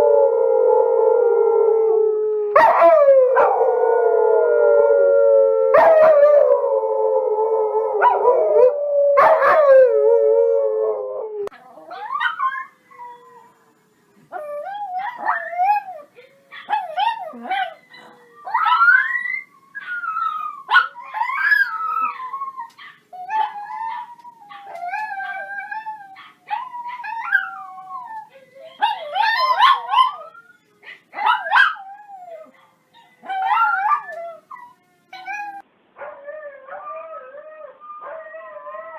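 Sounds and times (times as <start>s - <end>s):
dogs howling: 0.0s - 13.7s, 14.4s - 38.9s
dogs yipping and whining: 11.4s - 13.7s, 14.3s - 38.9s.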